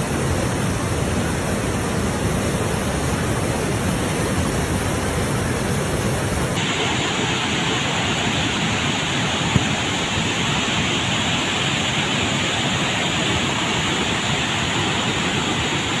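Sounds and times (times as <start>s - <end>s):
floodwater rushing: 0.0s - 16.0s.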